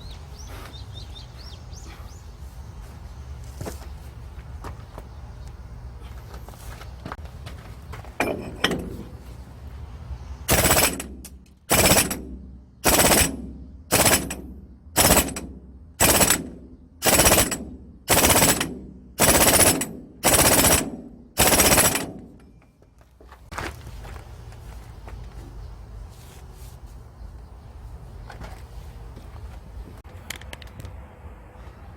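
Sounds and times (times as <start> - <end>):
pneumatic impact tool hammering: 10.5 - 22.6.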